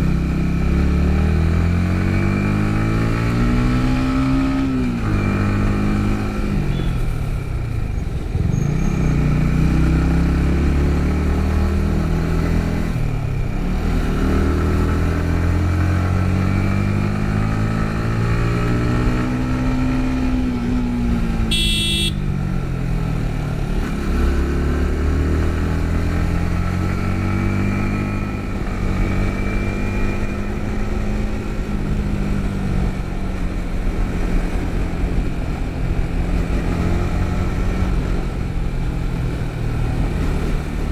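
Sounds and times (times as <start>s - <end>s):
motorcycle engine revving: 8.4s - 40.9s.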